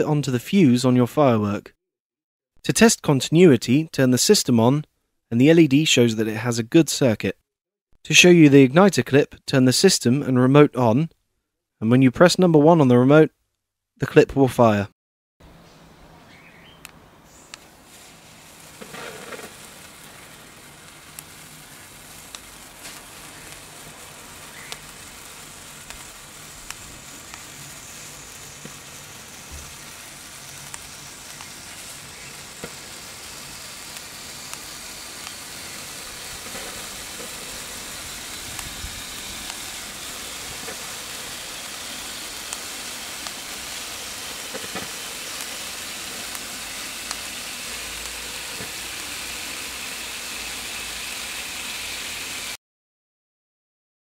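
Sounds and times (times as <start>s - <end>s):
firework hissing: 16.4s - 52.6s
firework crackles and pops: 16.8s - 52.6s.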